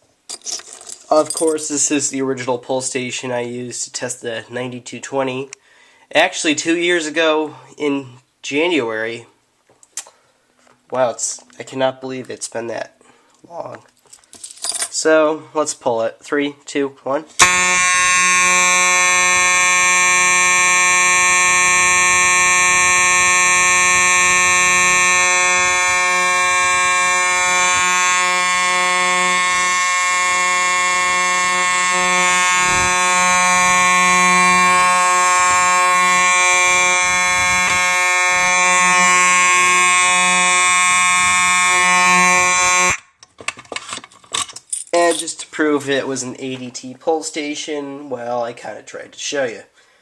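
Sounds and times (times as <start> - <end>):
fire alarm horn steady tone: 17.4 - 43.1.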